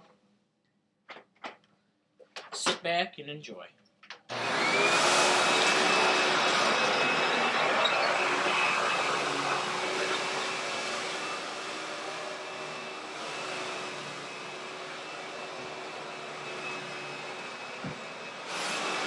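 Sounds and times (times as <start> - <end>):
vacuum cleaner motor whine: 4.3 - 19.0.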